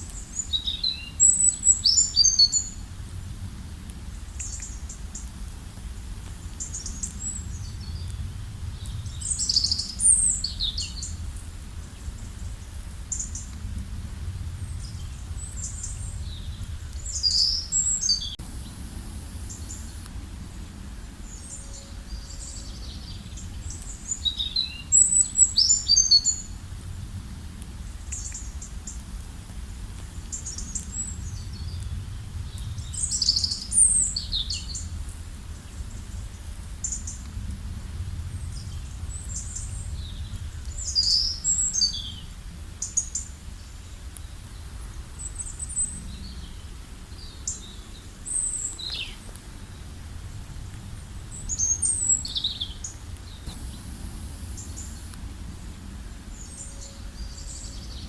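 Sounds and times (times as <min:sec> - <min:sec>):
small birds chirping: 0:00.0 - 0:02.8, 0:04.3 - 0:05.3, 0:06.5 - 0:11.2, 0:14.6 - 0:20.1, 0:38.1 - 0:43.3, 0:44.8 - 0:50.0, 0:51.3 - 0:58.0
low background rumble: 0:44.5 - 0:58.0.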